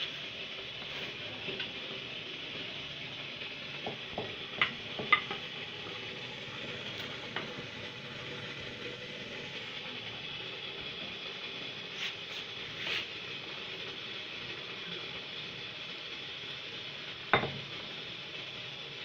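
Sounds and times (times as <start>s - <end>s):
steady hiss: 0.0s - 19.0s
kitchen tools knocking and clicking: 3.8s - 5.4s.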